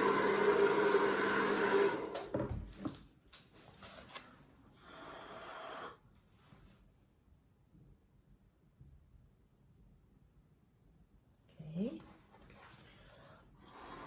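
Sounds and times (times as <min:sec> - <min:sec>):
hair dryer blowing: 0:00.0 - 0:02.6.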